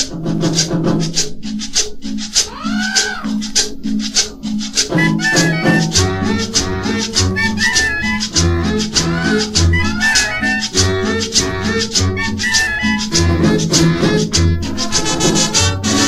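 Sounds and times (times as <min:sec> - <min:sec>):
instrumental cumbia music: 0:00.0 - 0:16.0
shaker rhythm: 0:00.0 - 0:16.0
bass line: 0:04.9 - 0:16.0.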